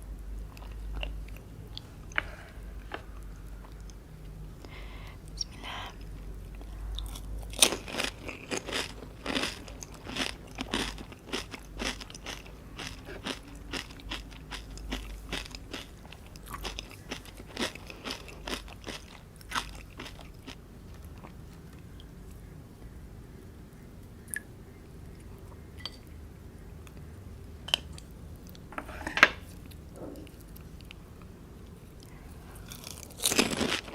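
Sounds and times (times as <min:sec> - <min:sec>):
crisp shells crunching: 0:32.7 - 0:33.9.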